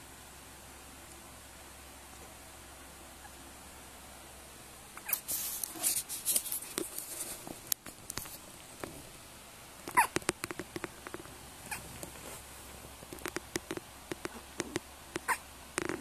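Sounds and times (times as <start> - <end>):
rustling of movement: 4.9 - 16.0.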